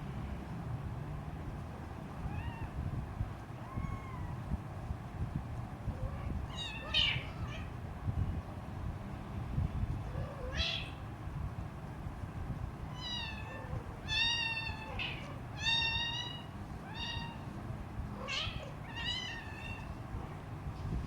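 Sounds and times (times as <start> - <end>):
kitten meowing: 3.6 - 4.4, 6.0 - 7.7, 10.3 - 11.0, 12.9 - 17.5, 18.2 - 19.9.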